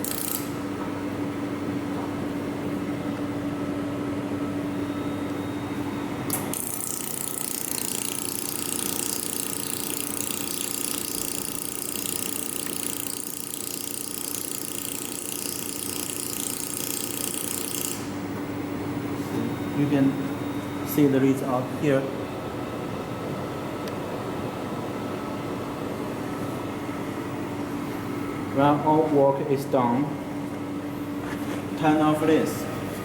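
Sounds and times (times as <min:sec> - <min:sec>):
welding machine rapid clicking: 0:00.0 - 0:00.6, 0:06.3 - 0:18.1
machine hum: 0:00.0 - 0:33.0.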